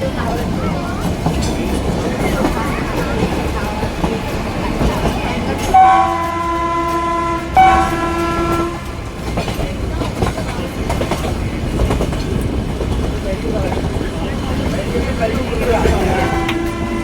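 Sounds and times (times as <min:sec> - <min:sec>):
train carriages rattling on track: 0:00.0 - 0:17.0
train horn blasts: 0:05.6 - 0:08.9, 0:15.9 - 0:17.0.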